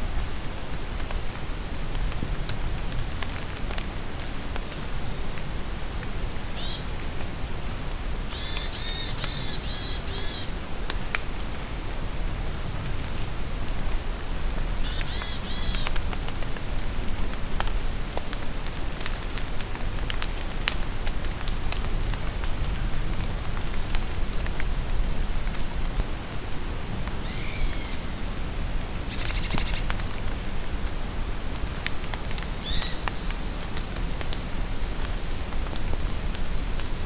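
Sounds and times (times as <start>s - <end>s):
rain falling: 0.0s - 37.0s
songbirds calling: 6.6s - 7.2s, 8.1s - 10.6s, 14.8s - 16.0s, 26.0s - 28.3s, 29.1s - 31.2s, 32.4s - 33.6s.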